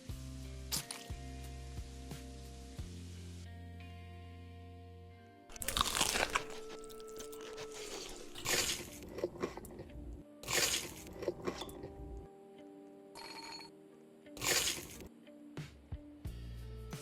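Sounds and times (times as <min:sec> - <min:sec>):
faint music tones: 0:00.0 - 0:17.0
crunching bites of crisp food: 0:00.7 - 0:01.2, 0:05.5 - 0:12.0, 0:14.4 - 0:15.1.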